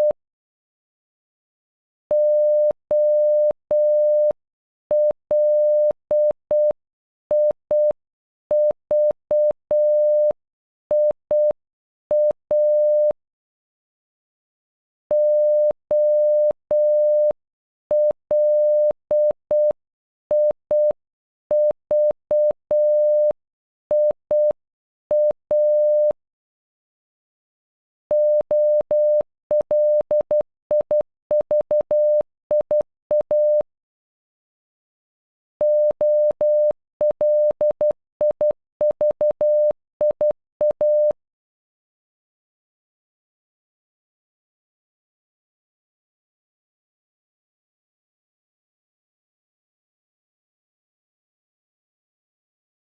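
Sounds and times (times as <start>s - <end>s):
morse code beeps: 2.1s - 13.2s, 15.1s - 26.2s, 28.1s - 33.7s, 35.6s - 41.2s.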